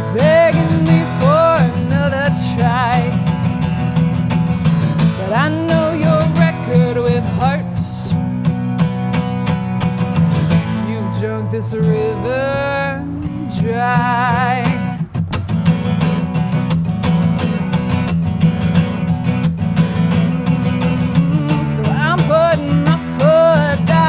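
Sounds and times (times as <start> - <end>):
woman singing: 0.0 - 3.6, 5.0 - 8.3, 10.6 - 15.0, 20.1 - 24.0
acoustic guitar strumming: 0.0 - 24.0.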